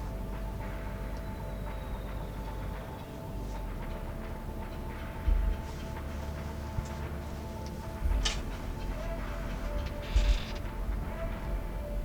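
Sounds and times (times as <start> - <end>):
low rumble: 0.0 - 12.0
music with held notes: 0.0 - 12.0.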